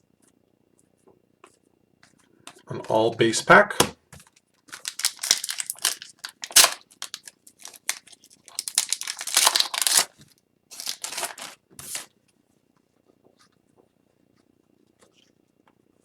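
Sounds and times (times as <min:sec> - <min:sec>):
wrapper tearing and crinkling: 0:04.7 - 0:12.1.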